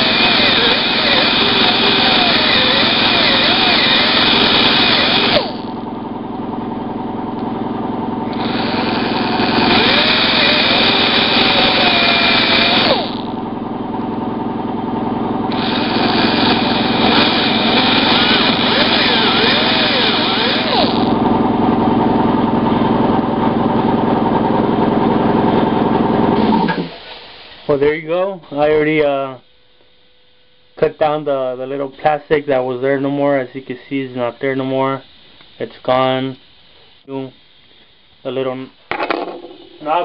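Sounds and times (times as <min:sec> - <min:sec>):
handheld power tool cutting plastic: 0:00.0 - 0:05.8, 0:08.3 - 0:13.4, 0:15.5 - 0:21.2.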